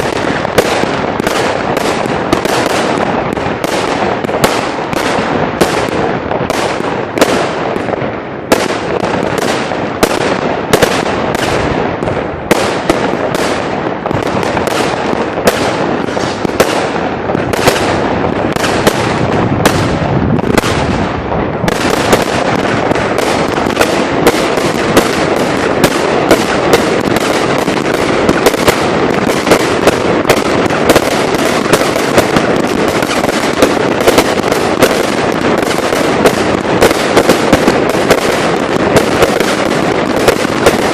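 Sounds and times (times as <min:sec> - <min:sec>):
fireworks bangs: 0:00.0 - 0:40.9
fireworks crackling: 0:00.0 - 0:40.9.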